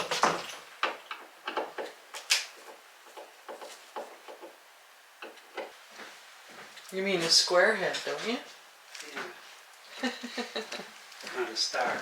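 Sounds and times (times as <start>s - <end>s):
light clicks and knocks of hardware: 5.2s - 5.8s.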